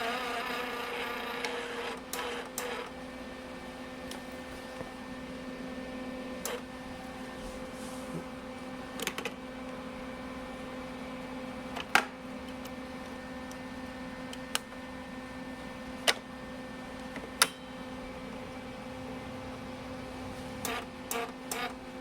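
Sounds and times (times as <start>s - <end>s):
welder wire feed motor running: 0.0s - 3.0s, 11.7s - 22.0s.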